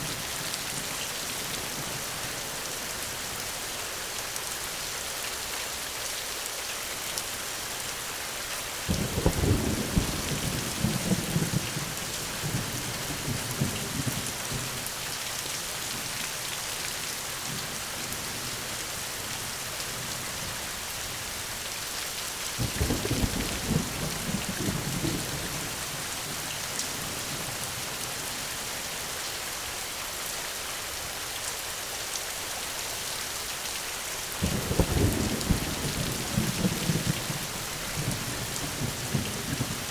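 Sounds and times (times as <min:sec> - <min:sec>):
heavy rain: 0:00.0 - 0:39.9
rolling thunder: 0:34.4 - 0:39.9.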